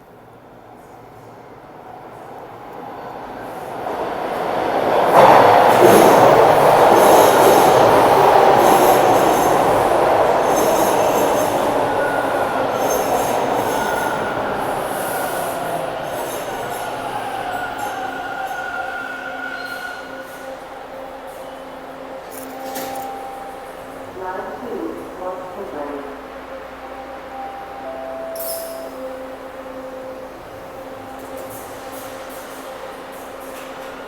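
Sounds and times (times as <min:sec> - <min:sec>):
subway train rumble: 0:00.0 - 0:34.0
crackly train clatter: 0:31.0 - 0:34.0.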